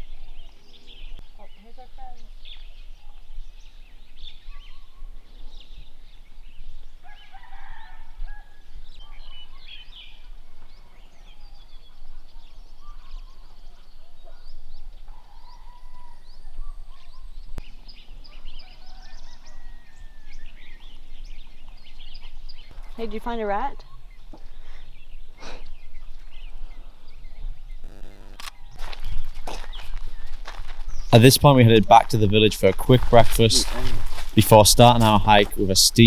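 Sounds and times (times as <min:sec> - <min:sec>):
birds chirping and calling: 0:27.8 - 0:36.0
sharp click: 0:27.9 - 0:29.2.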